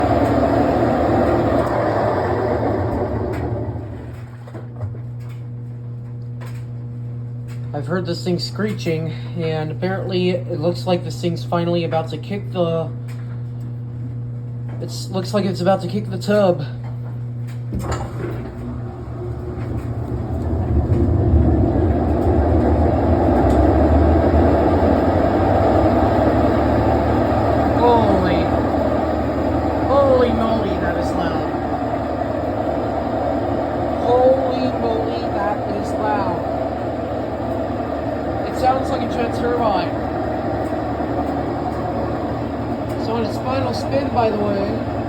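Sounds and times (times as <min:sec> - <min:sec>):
steady hum: 0:00.0 - 0:45.0
washing machine rushing noise: 0:00.0 - 0:45.0.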